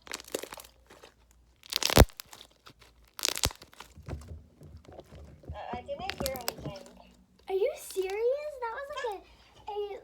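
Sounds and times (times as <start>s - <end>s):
slime crackling and popping: 0.0s - 8.4s.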